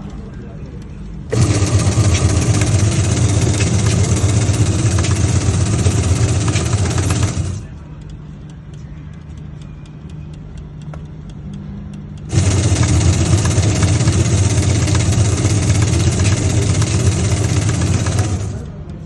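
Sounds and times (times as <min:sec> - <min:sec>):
washing machine hum with ticking: 0:00.0 - 0:19.0
loud steady washing machine noise: 0:01.3 - 0:07.7, 0:12.3 - 0:19.0.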